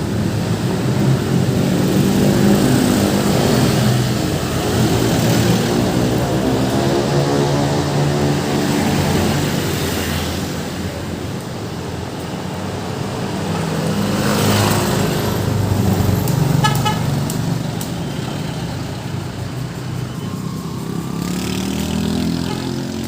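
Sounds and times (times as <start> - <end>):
busy road traffic: 0.0 - 23.0
large vehicle engine passing: 13.0 - 23.0.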